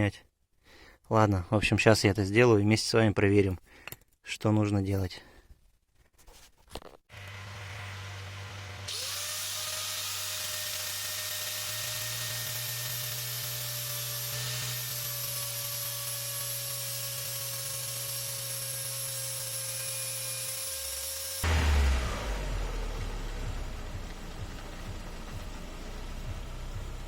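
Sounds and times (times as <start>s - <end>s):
angle grinder grinding metal: 7.1s - 26.0s.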